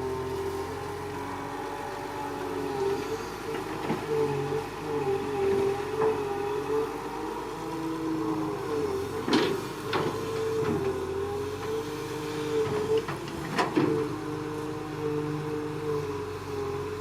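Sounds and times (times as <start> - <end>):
excavator engine and hydraulics: 0.0 - 17.0.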